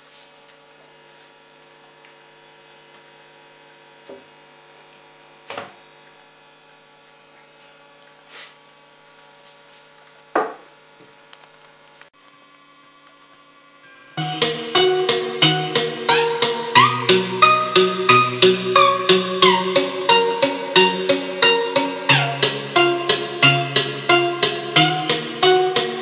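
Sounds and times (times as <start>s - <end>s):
amplifier mains hum: 0.0s - 26.0s.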